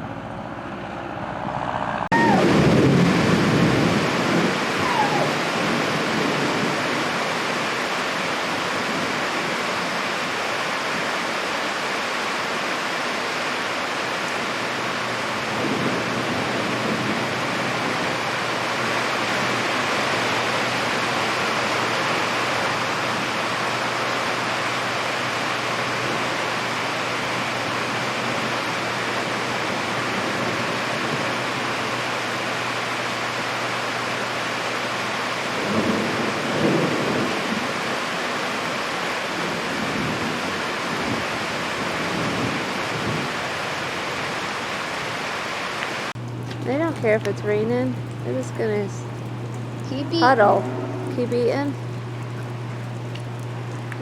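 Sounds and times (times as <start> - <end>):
heavy rain: 2.0 - 54.0
loud low rumble: 48.9 - 52.9.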